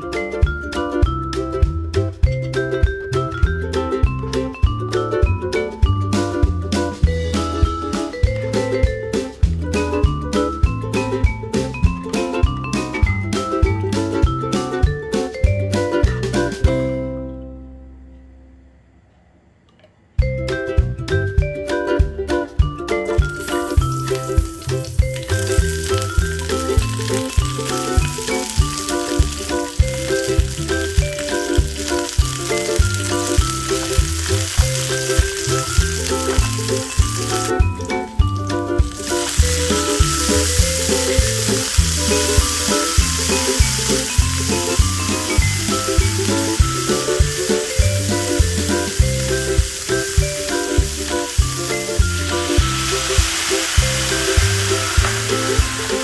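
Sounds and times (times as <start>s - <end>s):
background music with beat: 0.0s - 17.2s, 20.2s - 56.0s
vegetables sizzling in hot oil: 23.3s - 38.0s, 38.8s - 56.0s.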